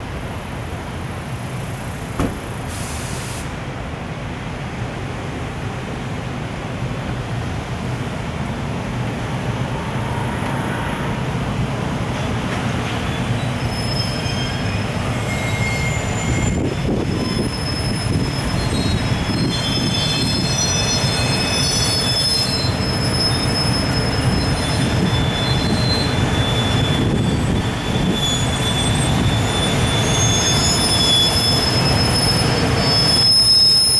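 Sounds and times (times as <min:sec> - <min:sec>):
freight train rumbling: 0:00.0 - 0:33.9
train wheel squeals: 0:09.1 - 0:11.4, 0:12.0 - 0:33.9.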